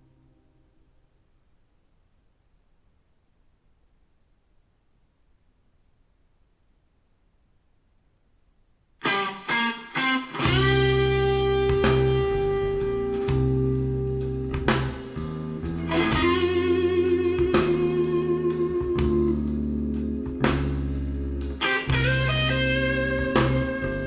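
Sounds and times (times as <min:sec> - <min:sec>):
rock song over loudspeakers: 0:09.1 - 0:13.7, 0:14.6 - 0:19.4, 0:20.0 - 0:24.0.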